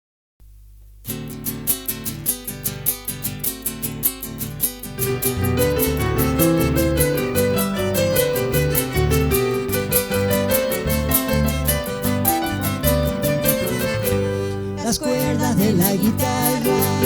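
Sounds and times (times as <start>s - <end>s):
strummed rhythm: 1.0s - 17.0s
keyboard melody: 4.8s - 17.0s
bass line: 5.1s - 17.0s.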